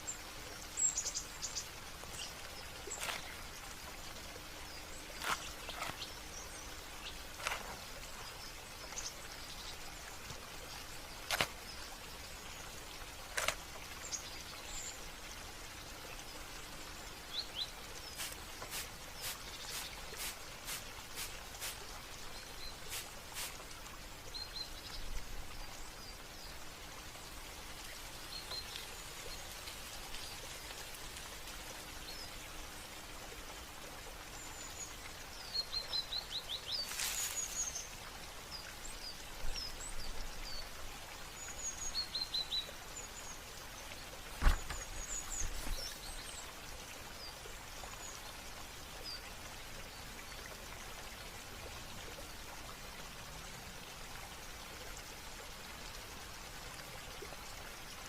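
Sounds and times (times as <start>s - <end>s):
small birds chirping: 0.0s - 12.0s, 16.1s - 23.7s, 34.5s - 40.7s, 44.4s - 46.5s
running water hiss: 0.0s - 58.0s.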